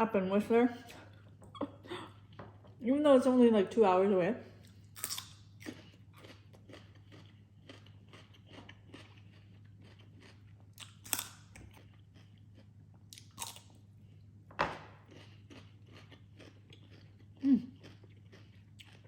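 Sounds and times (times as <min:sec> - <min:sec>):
chewing and crunching food: 0:04.6 - 0:19.0.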